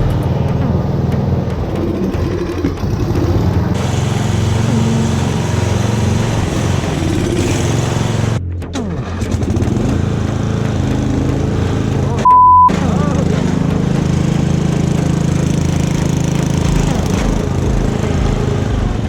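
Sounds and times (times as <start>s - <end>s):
riding lawn mower engine running: 0.0s - 8.4s, 9.0s - 19.0s.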